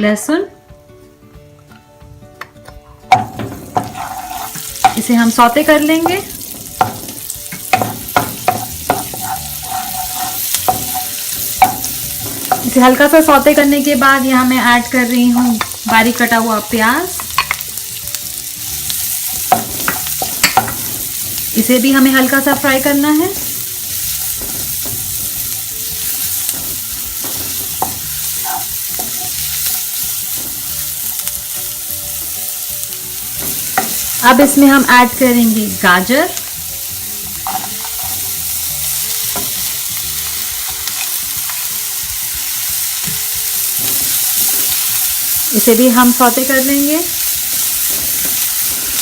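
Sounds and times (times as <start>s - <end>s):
utensil knocking against pan: 2.4s - 5.1s, 6.0s - 12.9s, 19.4s - 21.6s, 24.3s - 25.8s, 26.4s - 29.4s, 33.4s - 34.1s
garlic sizzling in butter: 3.1s - 49.0s.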